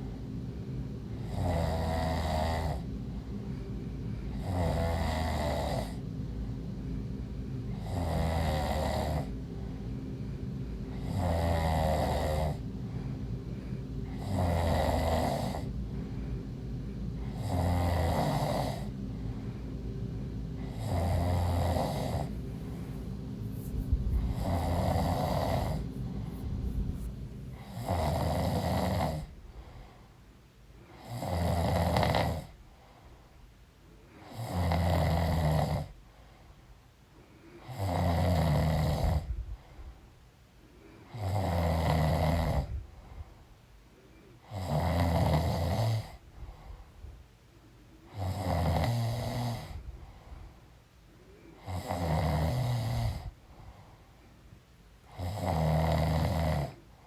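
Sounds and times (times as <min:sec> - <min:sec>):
woman snoring loudly: 0:01.2 - 0:02.9, 0:04.3 - 0:06.0, 0:07.7 - 0:09.4, 0:10.9 - 0:12.6, 0:14.0 - 0:15.7, 0:17.2 - 0:18.9, 0:20.6 - 0:29.3, 0:31.0 - 0:32.5, 0:34.2 - 0:35.9, 0:37.6 - 0:39.3, 0:41.1 - 0:42.8, 0:44.5 - 0:46.2, 0:48.1 - 0:49.8, 0:51.6 - 0:53.3, 0:55.1 - 0:56.8.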